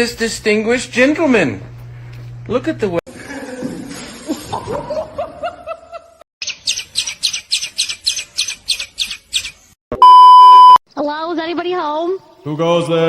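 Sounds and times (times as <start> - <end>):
bird chirping rapidly: 6.4 - 9.7
electronic beep: 10.0 - 10.8.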